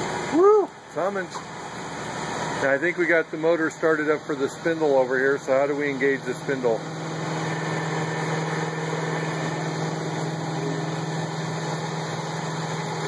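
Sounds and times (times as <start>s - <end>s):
electric motors humming: 0.0s - 13.0s
grinding wheel spinning: 4.4s - 13.0s.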